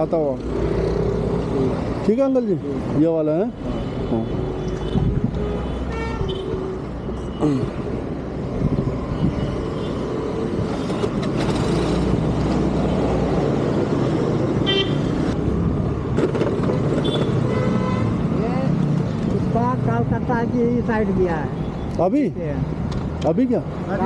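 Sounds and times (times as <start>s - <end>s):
vehicle engines running: 0.0s - 17.4s
vehicle horn honking: 4.0s - 6.8s, 14.6s - 15.1s, 17.0s - 18.1s.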